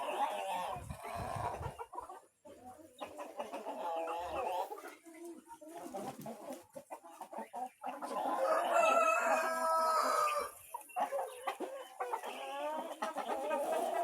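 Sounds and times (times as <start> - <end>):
chickens clucking: 0.0 - 14.0
rooster crowing: 8.4 - 10.5.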